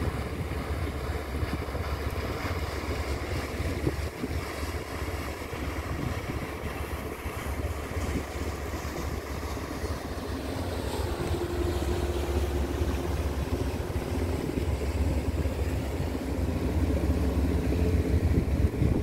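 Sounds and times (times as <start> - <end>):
ferry engines rumbling: 0.0 - 19.0
steady hum tone: 8.3 - 19.0.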